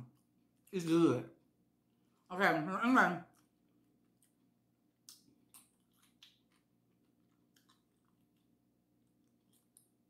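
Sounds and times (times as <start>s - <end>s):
person chewing: 3.3s - 10.0s.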